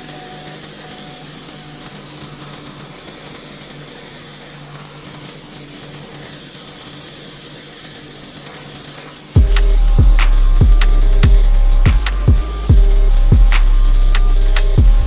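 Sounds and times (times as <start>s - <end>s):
low machine hum: 9.4s - 15.0s.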